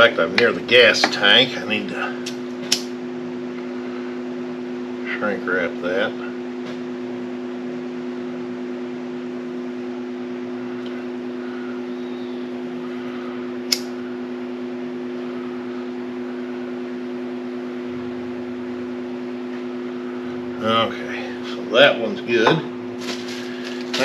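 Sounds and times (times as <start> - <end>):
sharp click: 2.3 - 2.9, 13.7 - 13.9.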